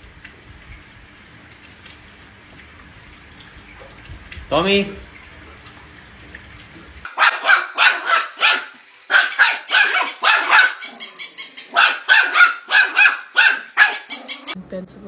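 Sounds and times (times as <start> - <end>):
dog barking rapidly: 7.1 - 14.6.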